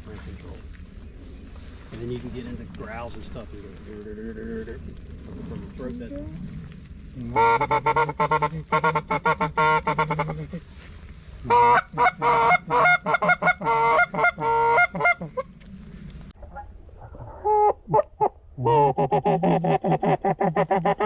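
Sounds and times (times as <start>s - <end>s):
goose call honks and clucks: 7.3s - 10.6s, 11.5s - 15.5s, 17.4s - 21.0s.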